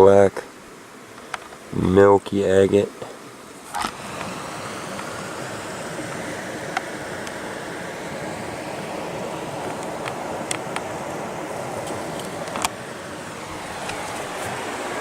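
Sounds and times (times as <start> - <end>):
river water flowing: 3.2 - 15.0.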